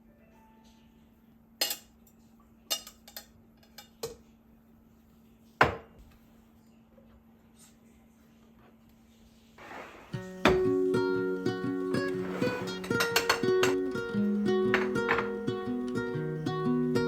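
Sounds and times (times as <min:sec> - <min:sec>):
dishes clinking: 0:01.6 - 0:04.2, 0:12.1 - 0:13.9, 0:14.6 - 0:15.5.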